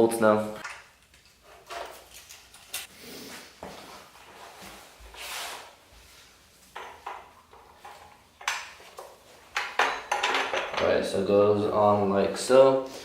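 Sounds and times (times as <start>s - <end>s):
metal parts clicking and rubbing: 0.6s - 2.9s.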